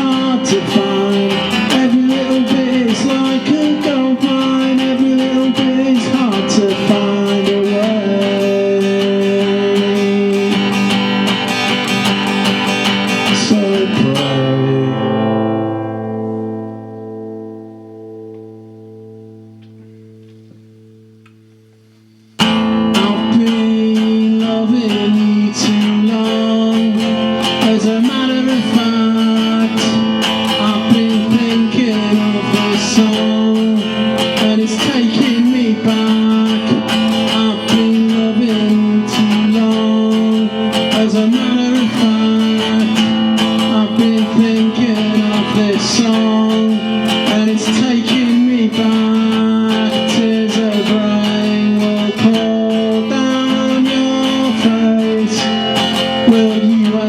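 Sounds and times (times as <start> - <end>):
acoustic guitar plucking: 0.0 - 57.0.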